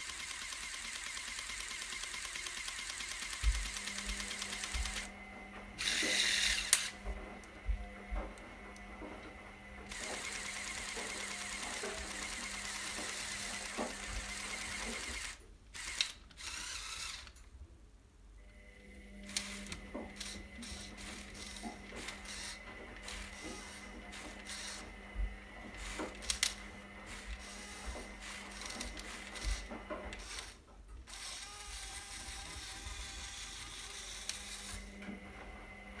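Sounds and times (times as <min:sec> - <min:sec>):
small electric motors whirring: 0:00.0 - 0:08.9, 0:09.8 - 0:17.4, 0:18.5 - 0:36.0.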